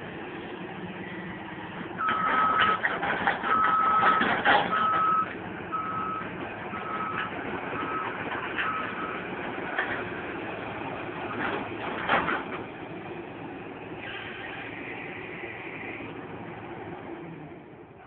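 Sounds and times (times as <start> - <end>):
excavator engine: 0.0 - 18.0
excavator warning alarm beeping: 2.0 - 9.4.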